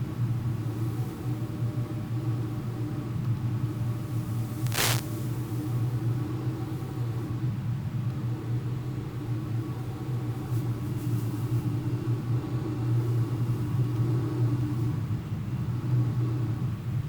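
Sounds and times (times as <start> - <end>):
faint hiss: 4.4 - 5.6.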